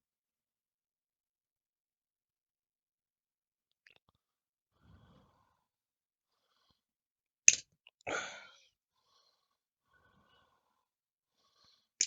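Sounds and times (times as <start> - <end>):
person breathing out forcefully: 8.1 - 11.9.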